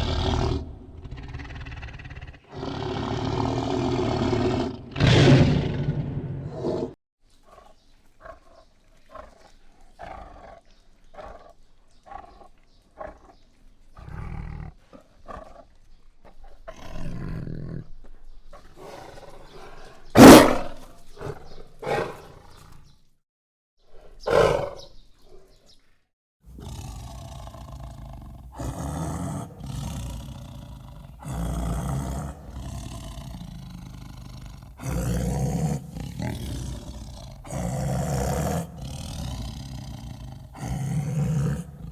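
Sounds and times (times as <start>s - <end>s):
tiger roaring: 0.0s - 7.0s, 18.7s - 22.6s, 24.2s - 24.9s, 26.5s - 41.9s
tiger grunting: 0.0s - 9.4s, 18.6s - 22.7s, 24.2s - 24.9s, 26.5s - 41.9s
tiger growling: 0.0s - 22.9s, 24.0s - 25.6s, 26.5s - 41.9s.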